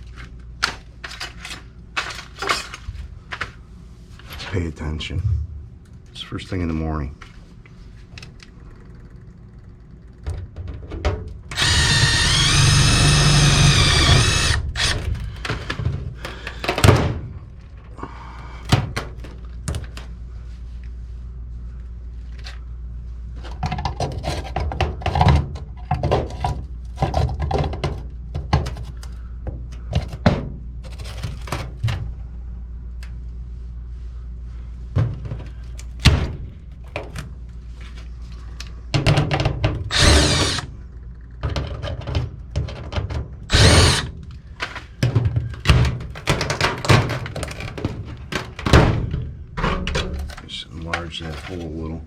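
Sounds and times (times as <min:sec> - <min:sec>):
steady low hum: 0:00.0 - 0:52.0
power tool bursts: 0:11.5 - 0:15.1, 0:39.9 - 0:40.7, 0:43.5 - 0:44.1
knocks and clatter on sheet metal: 0:38.9 - 0:39.9, 0:45.0 - 0:50.4.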